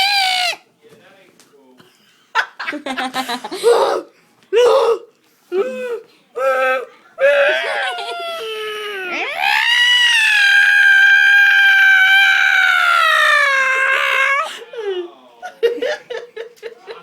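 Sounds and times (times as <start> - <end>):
person crying and squealing: 5.6 - 14.6.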